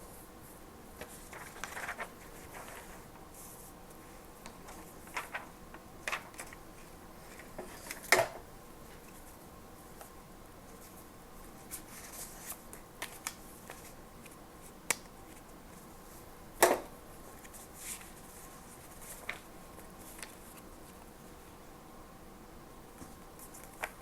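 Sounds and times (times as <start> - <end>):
paper rustling: 1.0 - 9.4, 17.4 - 21.0, 23.0 - 24.0.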